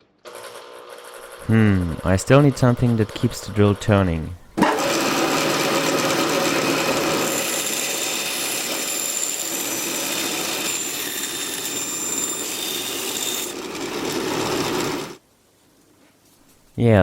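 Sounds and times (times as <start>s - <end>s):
drill motor whine: 4.6s - 15.2s.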